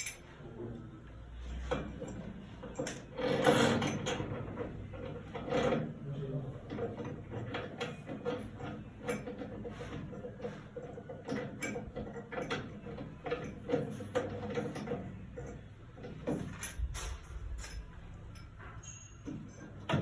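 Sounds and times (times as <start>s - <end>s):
tools and parts clicking: 0.0s - 0.3s, 7.4s - 20.0s.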